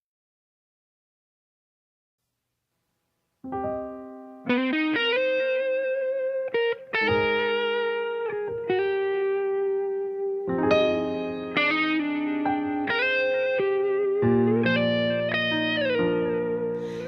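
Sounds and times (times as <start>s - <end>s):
keyboard and guitar chords: 3.5s - 17.0s.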